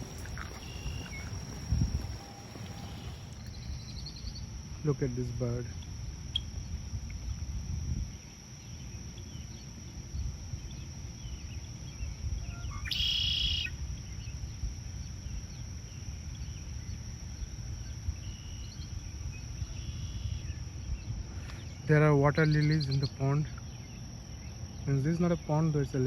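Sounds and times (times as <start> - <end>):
faint bird chirps: 0.0 - 4.5, 10.7 - 14.3, 15.5 - 25.6
wind rumble on microphone: 0.0 - 13.0, 13.7 - 25.9
thin steady high tone: 0.0 - 14.5, 15.1 - 26.0
harsh bird call: 22.3 - 23.2.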